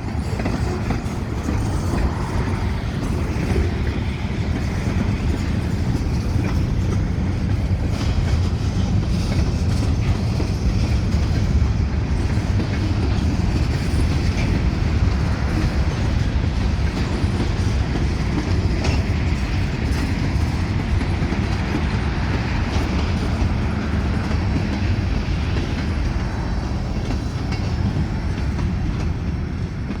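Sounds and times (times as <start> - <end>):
train wheels rumbling on rail: 0.0 - 30.0.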